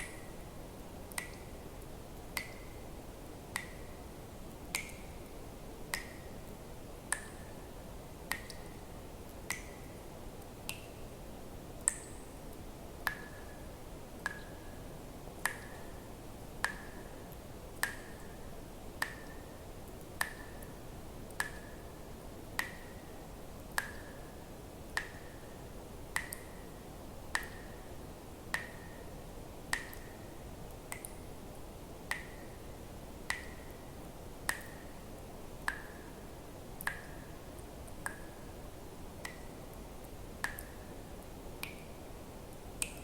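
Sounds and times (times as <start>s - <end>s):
water drops dripping: 0.0s - 0.4s, 1.1s - 1.6s, 2.3s - 2.8s, 3.5s - 4.0s, 4.7s - 6.4s, 7.1s - 7.5s, 8.2s - 11.0s, 11.8s - 12.2s, 13.0s - 13.6s, 14.2s - 14.8s, 15.4s - 15.9s, 16.6s - 18.4s, 19.0s - 21.8s, 22.5s - 22.9s, 23.6s - 24.1s, 24.9s - 25.4s, 26.1s - 26.6s, 27.3s - 27.8s, 28.5s - 29.0s, 29.7s - 31.2s, 32.1s - 32.6s, 33.3s - 33.7s, 34.4s - 35.0s, 35.6s - 36.2s, 36.8s - 38.4s, 39.2s - 39.8s, 40.4s - 40.9s, 41.6s - 43.0s
faint steady hiss: 0.0s - 43.0s.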